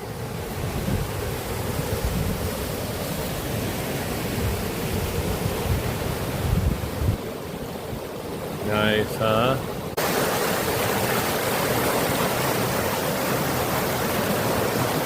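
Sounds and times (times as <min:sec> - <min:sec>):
wind buffeting microphone: 0:00.5 - 0:03.1, 0:04.4 - 0:08.1
waterfall rushing: 0:07.2 - 0:15.0.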